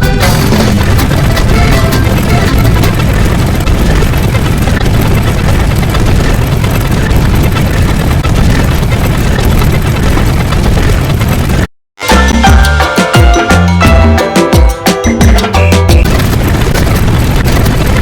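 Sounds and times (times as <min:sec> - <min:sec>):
loud dense rumbling: 0:00.0 - 0:11.7, 0:15.5 - 0:18.0.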